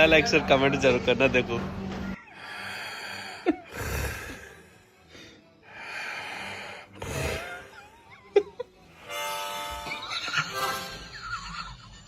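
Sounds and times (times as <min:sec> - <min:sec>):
person snoring: 0:02.2 - 0:07.8.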